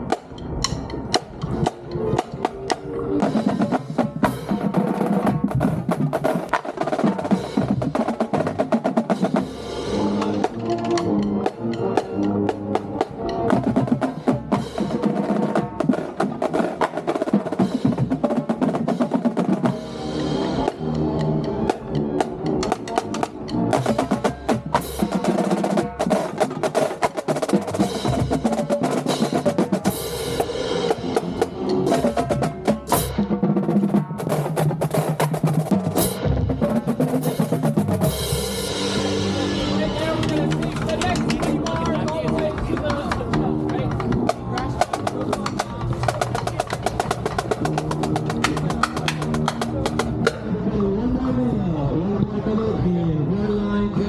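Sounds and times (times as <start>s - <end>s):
marching band playing: 0.0s - 51.5s
snare drums rattling: 22.6s - 50.4s.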